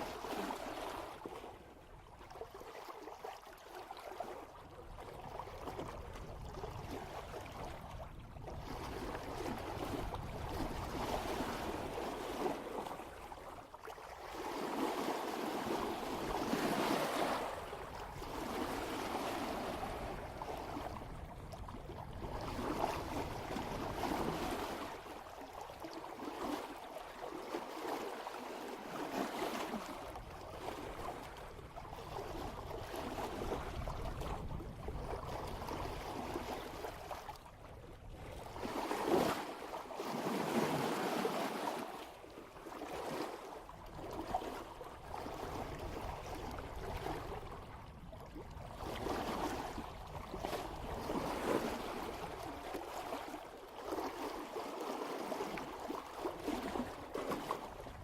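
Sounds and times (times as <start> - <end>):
water rushing along boat hull: 0.0 - 58.0
wind on microphone: 4.9 - 12.3, 16.1 - 25.0, 30.1 - 39.3, 45.0 - 52.6.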